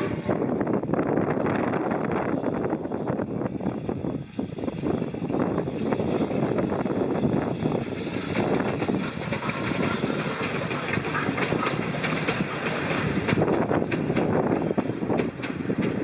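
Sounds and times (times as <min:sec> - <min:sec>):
train wheels clattering over rail joints: 0:00.9 - 0:16.0.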